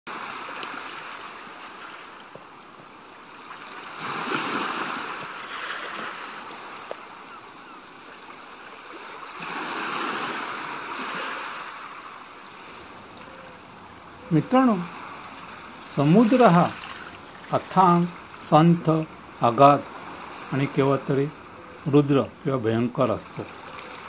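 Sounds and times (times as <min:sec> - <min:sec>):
ocean waves breaking: 0:00.1 - 0:24.0.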